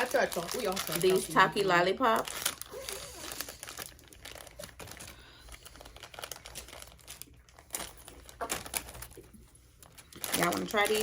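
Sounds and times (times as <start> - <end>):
plastic wrapper crinkling: 0.0 - 11.0.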